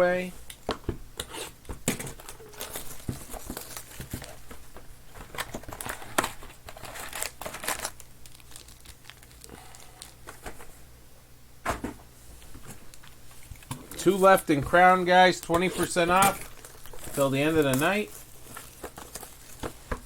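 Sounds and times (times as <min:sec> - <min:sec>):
plastic wrapping crinkling and tearing: 0:01.9 - 0:10.5, 0:12.6 - 0:20.0.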